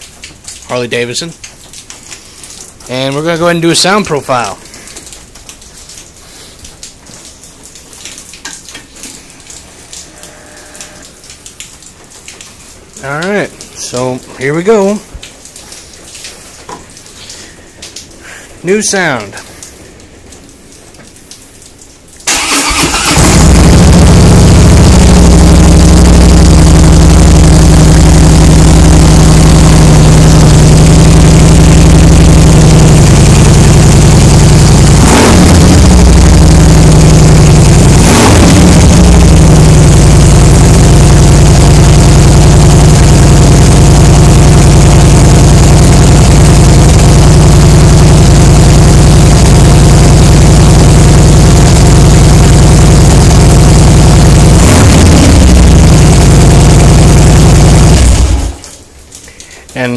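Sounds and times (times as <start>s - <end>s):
motorcycle throttle blips: 22.3s - 58.6s
motorcycle engine idling: 22.5s - 58.4s.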